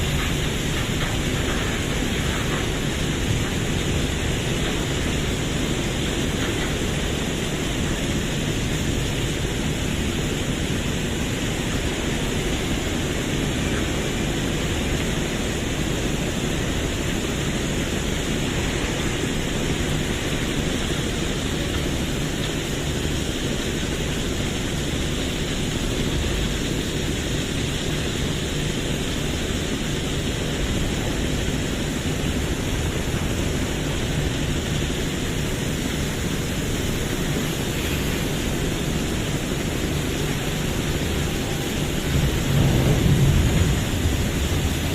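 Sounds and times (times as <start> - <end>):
heavy diesel machinery rumbling: 0.0 - 44.9
even hiss: 26.4 - 44.9.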